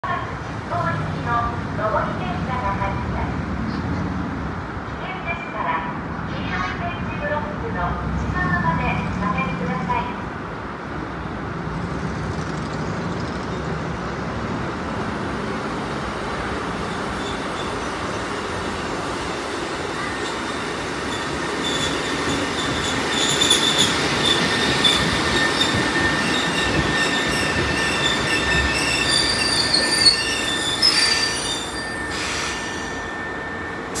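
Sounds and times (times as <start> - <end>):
electric train rumbling on track: 0.0 - 34.0
train wheels squealing: 20.1 - 34.0.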